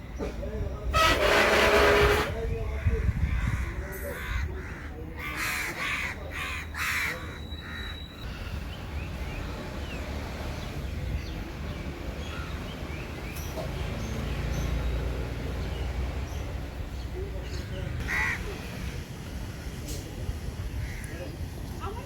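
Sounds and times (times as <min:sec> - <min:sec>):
crow cawing: 0:03.2 - 0:07.9, 0:18.0 - 0:18.5.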